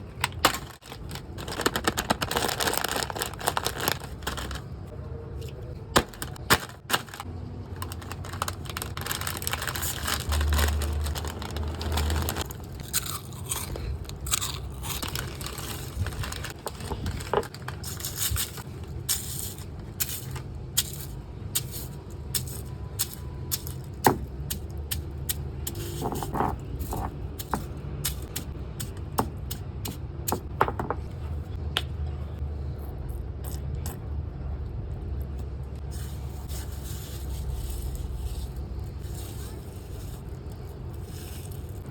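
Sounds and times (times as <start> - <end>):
chewing crunchy snack: 8.6 - 16.5.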